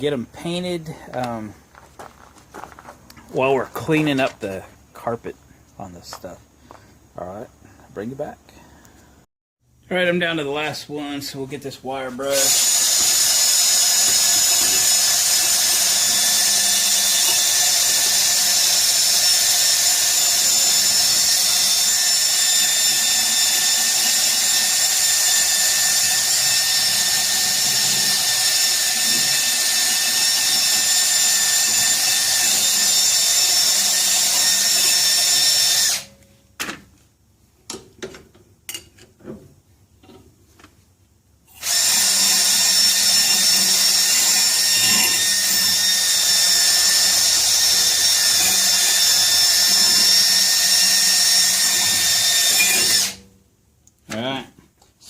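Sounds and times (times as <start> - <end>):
wire brush grinding steel: 12.2 - 36.1, 41.5 - 53.2.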